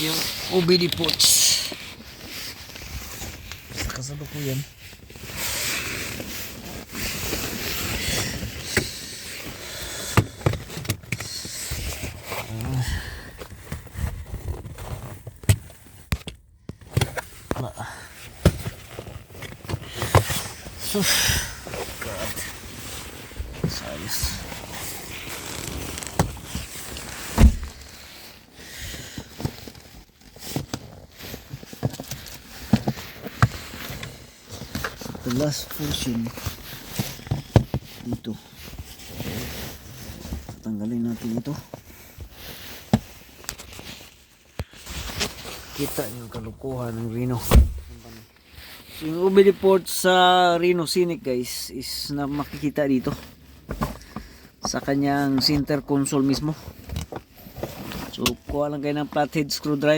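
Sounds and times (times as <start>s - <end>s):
hands rustling on plastic trim: 18.2s - 28.5s
hands handling car trim: 25.4s - 28.0s
loud thump: 27.4s - 27.8s, 47.4s - 48.0s.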